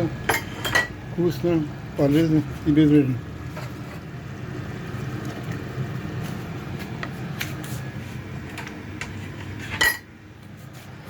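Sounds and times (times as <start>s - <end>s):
kitchen appliance humming: 0.0s - 11.0s.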